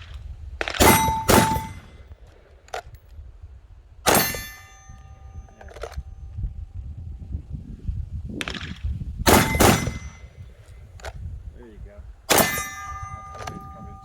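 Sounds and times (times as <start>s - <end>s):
pistol shots: 0.6s - 2.0s, 4.1s - 4.6s, 8.4s - 10.4s, 12.3s - 14.0s
steel target ringing: 0.8s - 2.0s, 4.1s - 5.8s, 9.3s - 10.6s, 12.3s - 14.0s.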